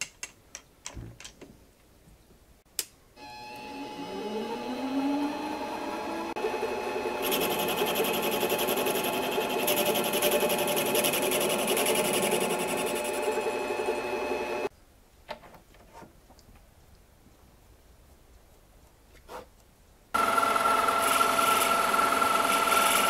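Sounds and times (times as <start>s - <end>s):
metal lathe motor whine: 3.2s - 14.7s, 20.2s - 23.0s.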